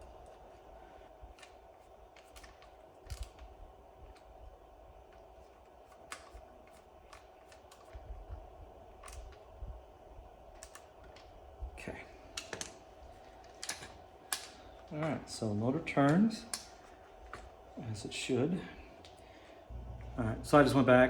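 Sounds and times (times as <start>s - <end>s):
faint steady hum: 0.0s - 21.0s
small clicks of parts: 1.3s - 3.5s, 5.1s - 8.1s, 9.0s - 9.5s, 10.5s - 11.3s, 12.3s - 15.0s, 16.0s - 17.5s.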